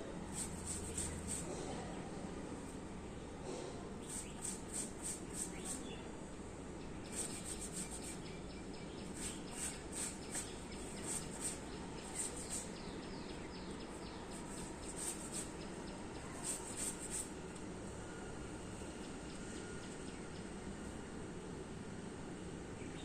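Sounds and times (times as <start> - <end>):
outdoor background hiss: 0.0 - 23.0.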